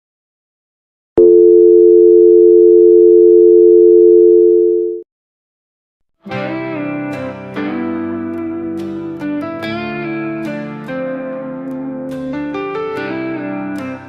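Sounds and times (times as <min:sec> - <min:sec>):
telephone dial tone: 0:01.2 - 0:05.0
guitar music: 0:06.2 - 0:14.0.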